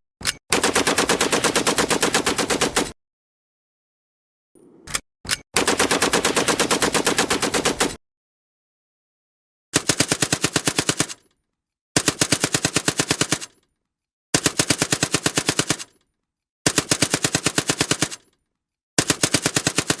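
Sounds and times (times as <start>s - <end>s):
machine gun firing bursts: 0.5s - 3.0s, 5.6s - 8.0s, 9.8s - 11.2s, 14.4s - 15.9s, 16.7s - 18.2s, 19.0s - 20.0s.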